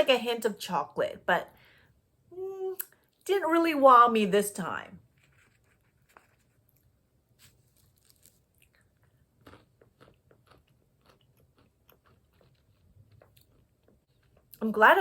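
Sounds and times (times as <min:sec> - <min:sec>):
chewing and crunching almonds: 0:05.0 - 0:14.8.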